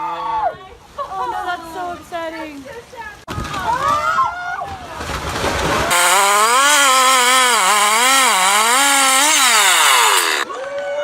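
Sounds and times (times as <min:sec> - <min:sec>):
chainsaw running at high revs: 0:05.9 - 0:10.5.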